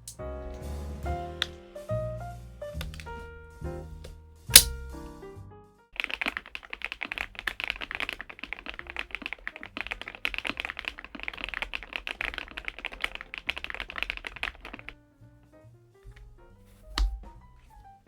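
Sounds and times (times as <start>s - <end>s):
fast mechanical keyboard typing: 6.0s - 15.0s.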